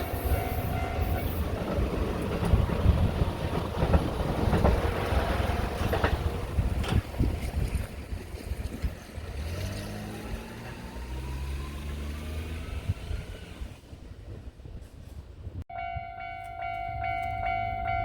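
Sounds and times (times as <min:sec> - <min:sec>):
low train rumble: 0:00.0 - 0:18.0.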